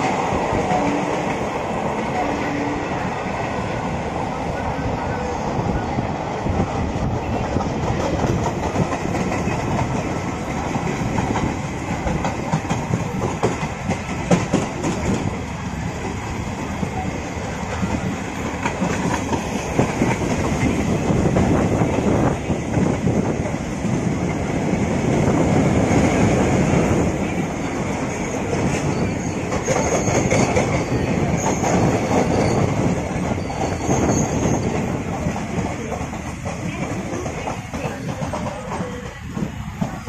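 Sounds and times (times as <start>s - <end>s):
train wheels clattering over rail joints: 7.6s - 15.4s, 17.7s - 22.2s, 28.4s - 40.0s.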